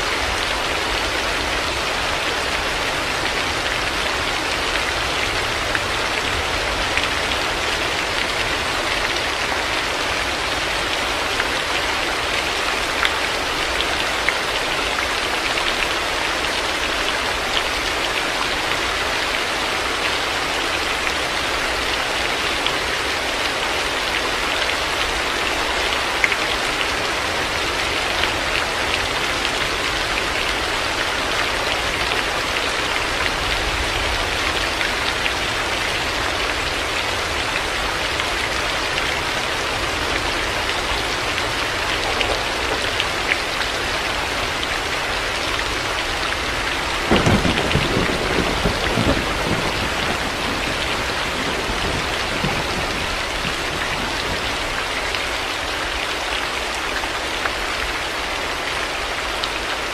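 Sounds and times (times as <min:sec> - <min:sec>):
heavy rain hissing: 0:00.0 - 0:59.9
raindrops ticking on surfaces: 0:00.0 - 0:59.9.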